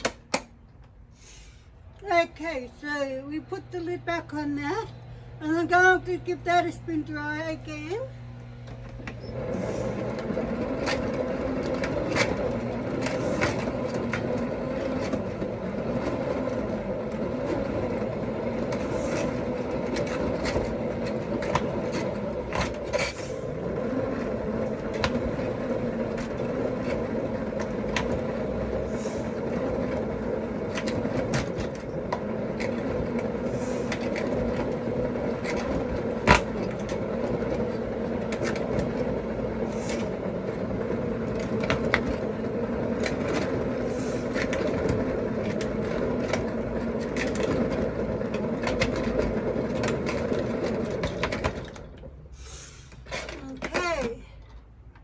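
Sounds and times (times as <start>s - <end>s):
spin dryer motor hum: 1.9s - 52.3s
clicks and rattles: 8.6s - 52.2s.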